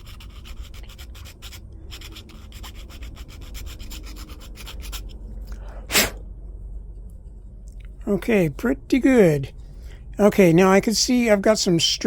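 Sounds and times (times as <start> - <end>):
hand file scraping plastic: 0.0 - 5.2.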